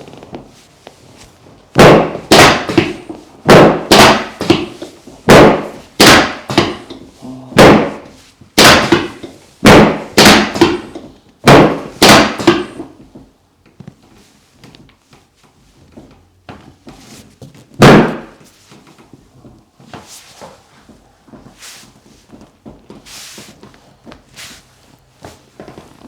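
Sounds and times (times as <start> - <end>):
loud sharp thuds: 1.8 - 7.0, 7.6 - 12.9, 17.8 - 18.4.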